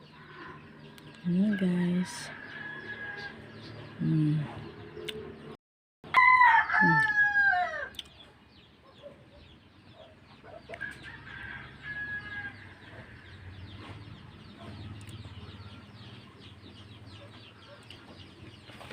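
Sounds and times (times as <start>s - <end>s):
chickens clucking: 12.6s - 18.9s.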